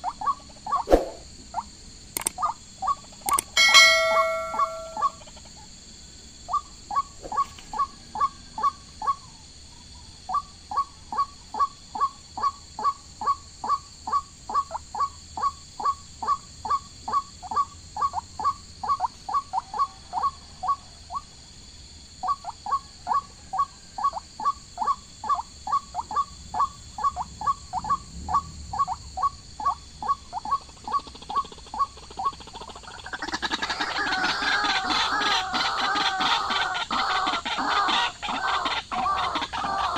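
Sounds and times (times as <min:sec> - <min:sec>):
bird calling: 0:02.2 - 0:05.4, 0:22.2 - 0:39.9.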